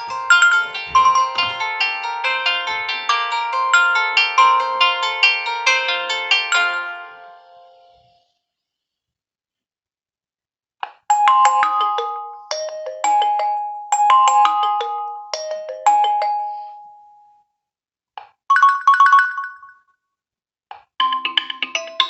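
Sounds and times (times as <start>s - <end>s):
phone ringtone melody: 0.0s - 7.9s, 11.1s - 17.4s, 18.5s - 19.8s, 21.0s - 22.0s.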